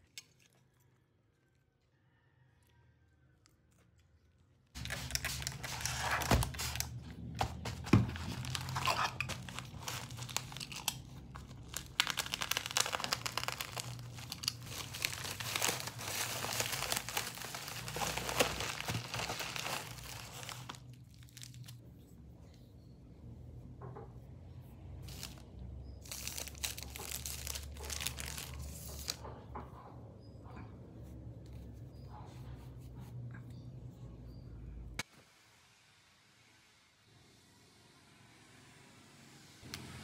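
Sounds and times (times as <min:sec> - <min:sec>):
plastic packaging crinkling: 0:04.8 - 0:21.8, 0:25.0 - 0:29.2.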